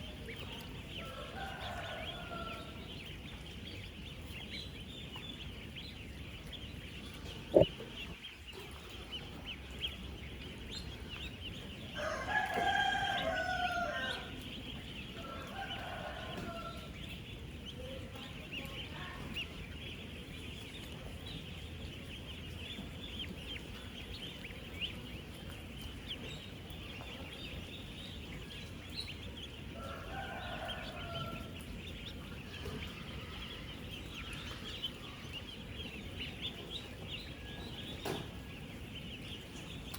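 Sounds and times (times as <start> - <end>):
ducklings peeping: 0.0 - 39.9.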